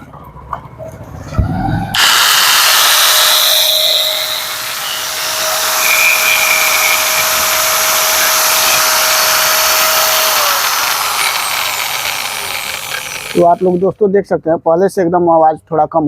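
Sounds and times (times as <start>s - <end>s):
angle grinder running: 2.0s - 13.8s.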